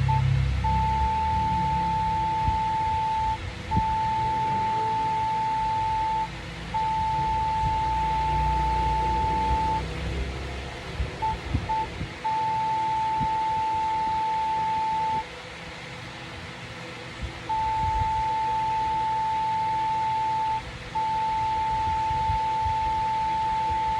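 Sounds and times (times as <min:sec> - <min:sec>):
morse code tone: 0:00.0 - 0:10.4, 0:11.0 - 0:15.3, 0:17.4 - 0:23.9.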